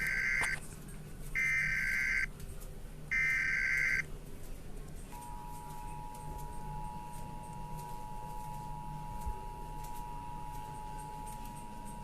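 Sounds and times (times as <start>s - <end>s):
digital data bursts: 0.0s - 0.6s, 1.4s - 2.3s.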